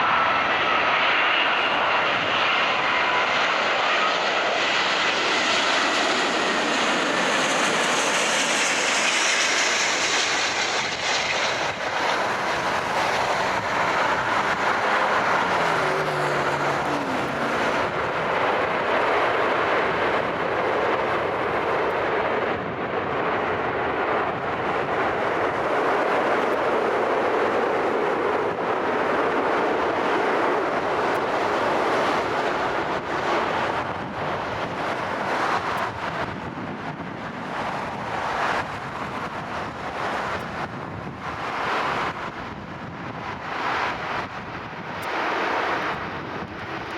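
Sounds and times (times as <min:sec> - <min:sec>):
jet engine roar: 0:00.0 - 0:46.9.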